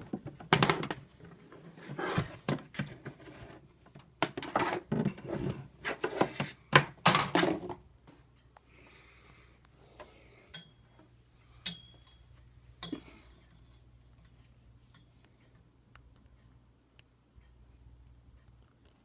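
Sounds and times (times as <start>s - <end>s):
knocks clicks and rustling handling: 0.0s - 7.9s.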